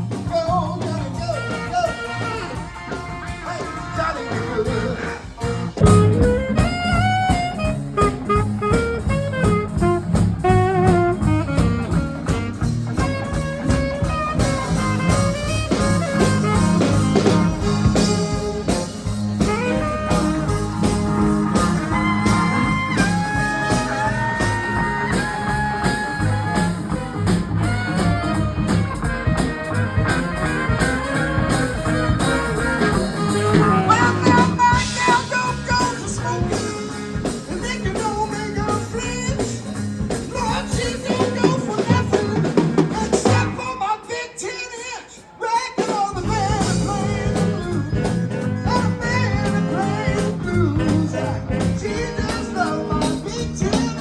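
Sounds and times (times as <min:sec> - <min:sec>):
swing band playing: 0:00.0 - 0:54.0
lead instrument solo: 0:01.1 - 0:39.4.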